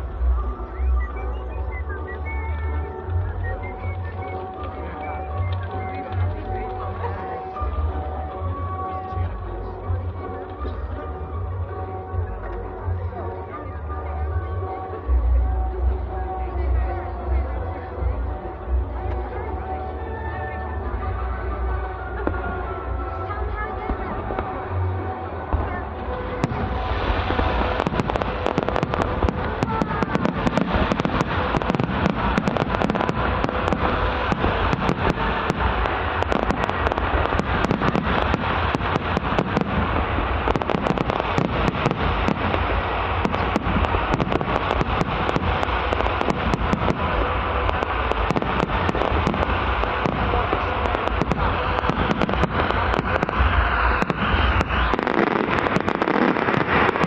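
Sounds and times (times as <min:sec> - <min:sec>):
deep fireworks booms: 0:00.0 - 0:57.0
fireworks crackling and banging: 0:00.0 - 0:57.0.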